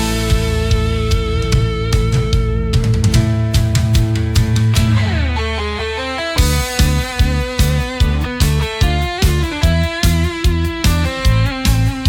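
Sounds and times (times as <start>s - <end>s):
background music with steady beat: 6.2s - 12.0s.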